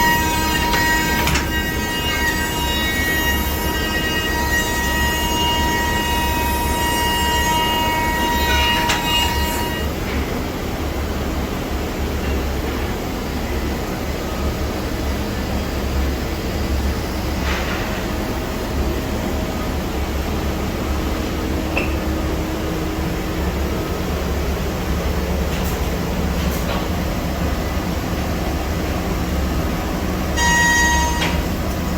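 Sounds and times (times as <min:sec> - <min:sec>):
high spindle whine: 0:00.0 - 0:10.0
loud machine noise: 0:00.0 - 0:13.5, 0:14.4 - 0:31.9.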